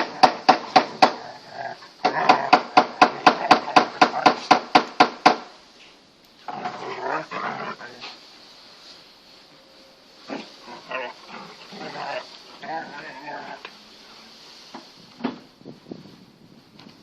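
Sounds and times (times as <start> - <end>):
dog growling: 6.5 - 8.0, 10.3 - 13.7.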